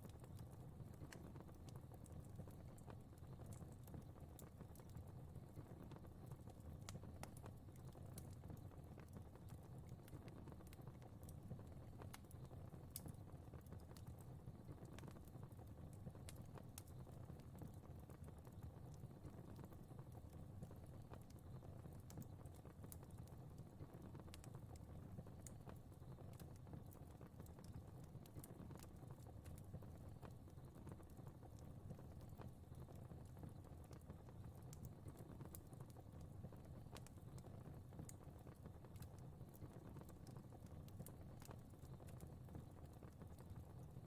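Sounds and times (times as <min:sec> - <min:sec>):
fire crackling and popping: 0:00.0 - 0:44.0
low rumble of flames: 0:00.0 - 0:44.0.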